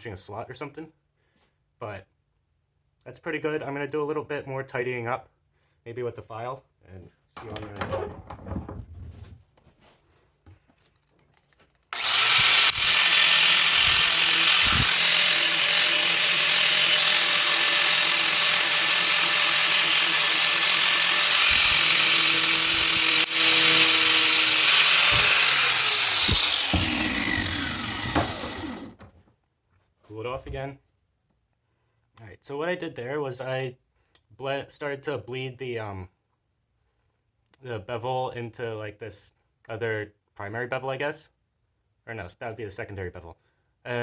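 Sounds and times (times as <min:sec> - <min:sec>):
angle grinder grinding steel: 0:11.9 - 0:29.0.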